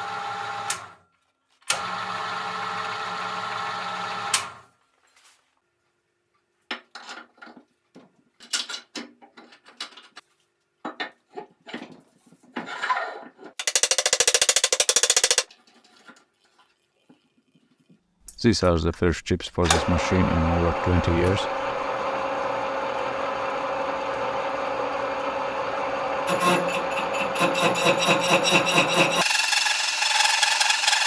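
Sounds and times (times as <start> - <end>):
milling machine humming: 19.6 - 31.0.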